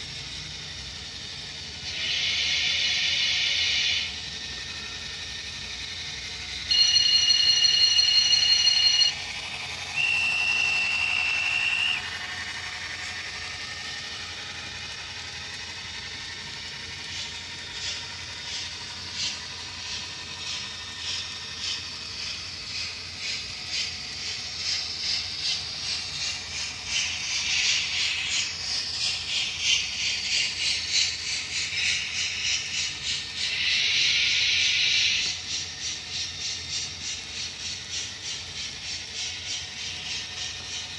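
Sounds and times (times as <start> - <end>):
steam locomotive chuffing: 0.0 - 40.9
single-note whistle: 6.7 - 9.2, 9.9 - 12.1
train chime whistle: 6.7 - 9.2.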